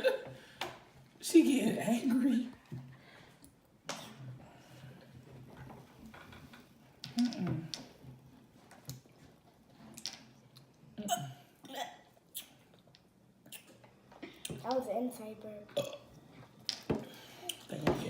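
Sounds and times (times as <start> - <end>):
soft burps: 11.0 - 12.1, 15.7 - 16.2.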